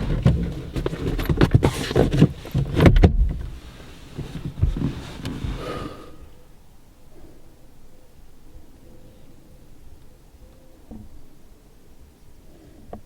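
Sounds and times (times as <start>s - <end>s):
soft scattered bumps: 0.0s - 6.0s.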